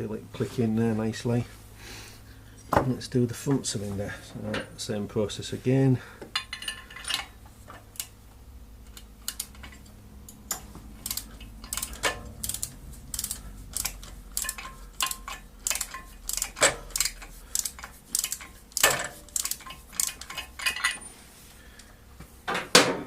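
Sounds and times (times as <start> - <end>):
metal hand tools clinking: 6.4 - 7.4, 9.3 - 21.1.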